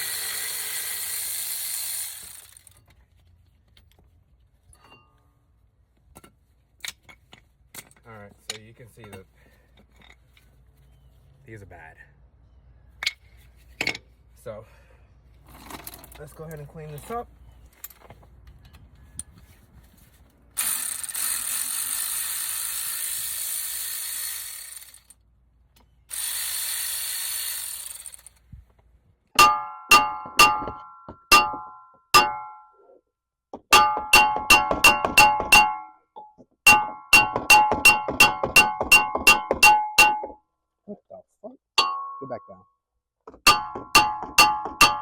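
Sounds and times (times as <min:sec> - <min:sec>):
metal being struck ringing: 0:29.4 - 0:32.8, 0:41.8 - 0:42.5.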